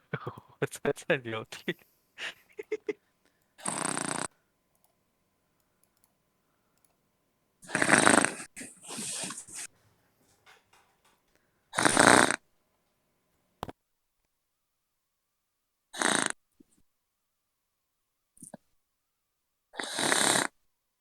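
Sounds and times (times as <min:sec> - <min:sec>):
person snoring: 0:03.6 - 0:04.3, 0:07.6 - 0:09.7, 0:11.8 - 0:12.4.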